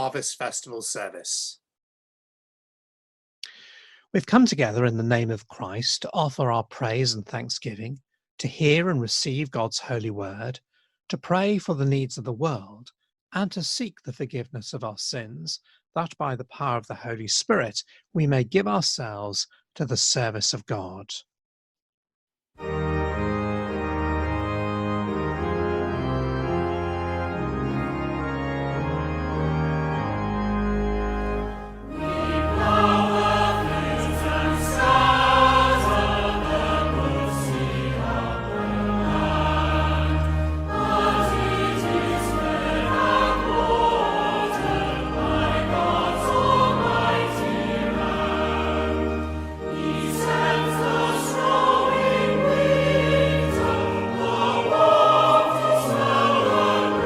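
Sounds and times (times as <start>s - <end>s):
pipe organ playing chords: 0.0s - 0.6s, 22.6s - 57.0s
voices singing a hymn: 31.4s - 57.0s.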